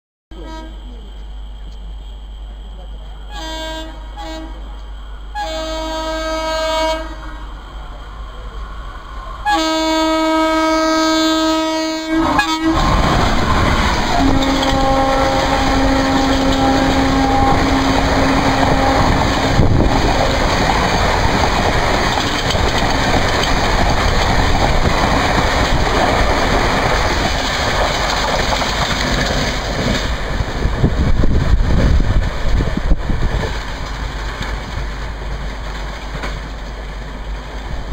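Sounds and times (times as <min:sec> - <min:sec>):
locomotive horn blasts: 0:00.3 - 0:00.9, 0:03.3 - 0:04.6, 0:05.3 - 0:07.4, 0:09.4 - 0:12.9, 0:14.1 - 0:19.8
train coaches rushing past: 0:00.7 - 0:37.9.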